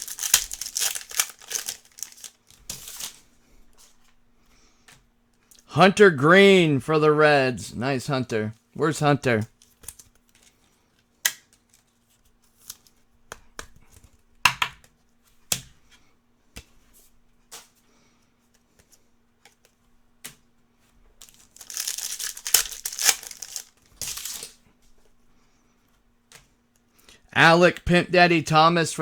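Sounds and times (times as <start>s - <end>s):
cards clicking and tapping: 0.0s - 3.0s, 12.7s - 15.8s
foil wrapper tearing and crinkling: 0.0s - 3.2s, 21.2s - 24.6s.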